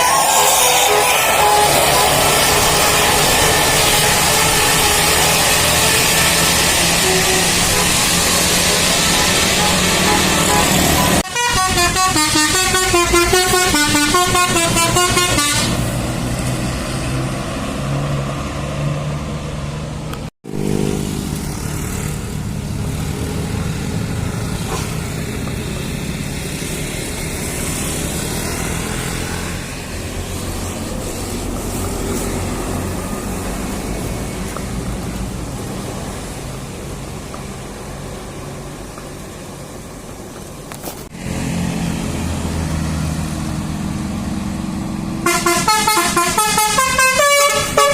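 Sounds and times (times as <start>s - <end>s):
bus horn playing warbling melody: 0.0s - 16.0s, 45.2s - 47.9s
engine and road noise: 0.0s - 47.9s.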